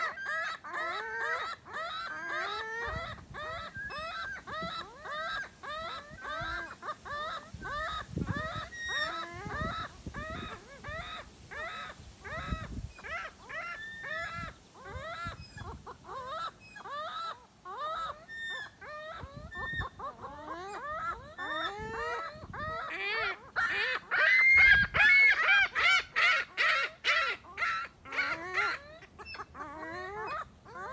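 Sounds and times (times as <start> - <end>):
seagulls squawking: 0.0 - 30.9.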